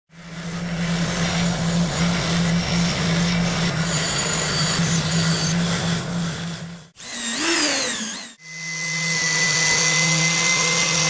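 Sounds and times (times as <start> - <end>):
power tool grinding metal: 0.2 - 11.0.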